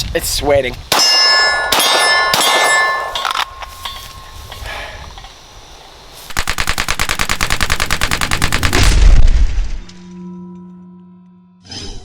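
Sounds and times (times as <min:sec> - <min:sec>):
automatic gunfire: 0:06.4 - 0:09.2.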